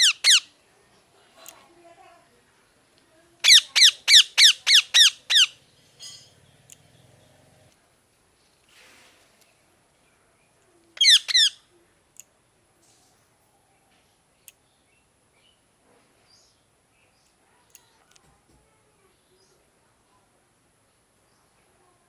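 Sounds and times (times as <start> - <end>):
parrot calls: 0.0 - 0.5, 3.4 - 5.6, 11.0 - 11.6
faint clicks: 17.2 - 18.7.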